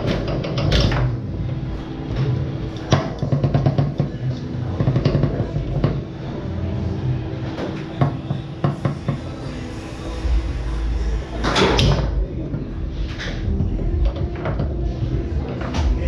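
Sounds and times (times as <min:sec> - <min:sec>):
foosball rods clacking: 0:00.0 - 0:06.4, 0:07.5 - 0:09.5, 0:11.4 - 0:16.0
steady low hum: 0:00.0 - 0:16.0
foosball ball cracking: 0:02.8 - 0:06.1.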